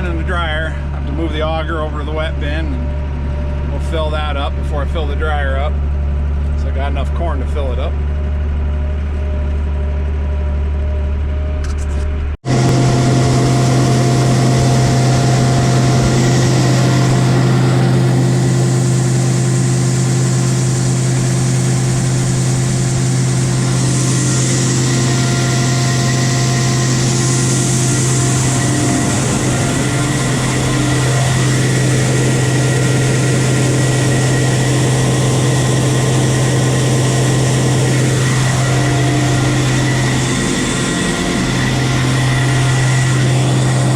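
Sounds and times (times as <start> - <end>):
farm engine running with hiss: 0.0 - 9.6, 11.8 - 43.9
low machine hum: 0.0 - 43.9.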